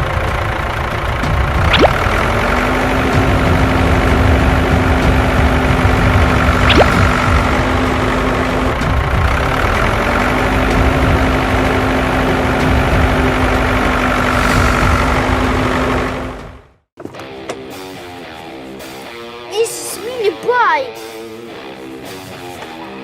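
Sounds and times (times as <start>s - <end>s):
low engine-like rumble: 0.0s - 16.7s.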